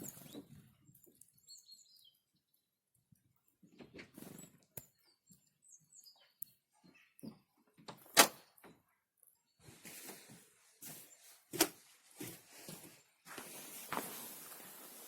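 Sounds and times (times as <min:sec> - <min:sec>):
soft rustling: 0:09.6 - 0:15.0.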